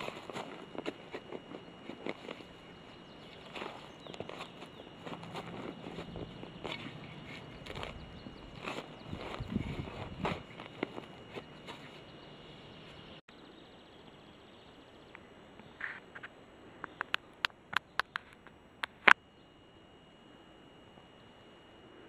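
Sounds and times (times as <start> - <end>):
sharp clicks: 16.2 - 19.2.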